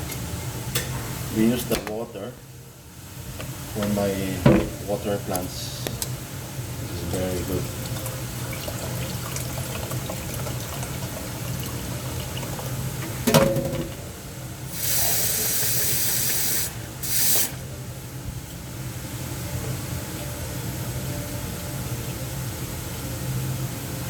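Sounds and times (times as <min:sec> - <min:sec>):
tap water running: 0:06.8 - 0:17.6
pot clanking: 0:13.1 - 0:14.1.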